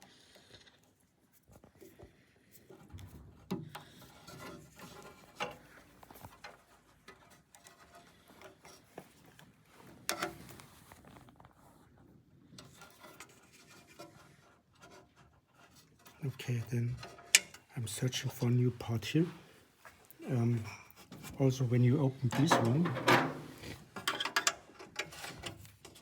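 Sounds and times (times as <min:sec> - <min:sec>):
rummaging through small parts: 0:22.1 - 0:26.0.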